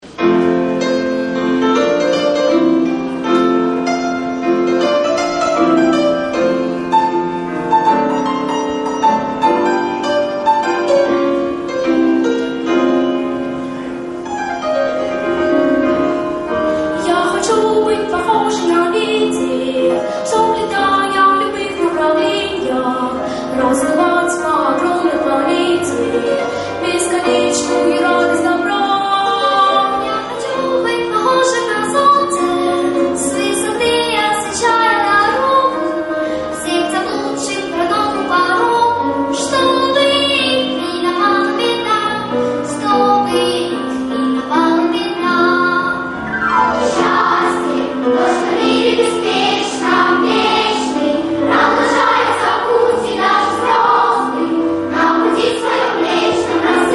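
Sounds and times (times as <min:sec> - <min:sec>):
instrumental accompaniment: 0:00.0 - 0:56.9
children's choir singing: 0:15.2 - 0:56.9.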